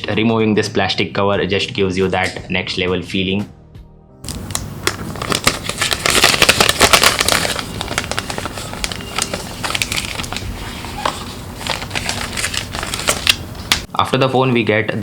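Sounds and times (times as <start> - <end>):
plastic film crinkling: 4.3 - 13.9.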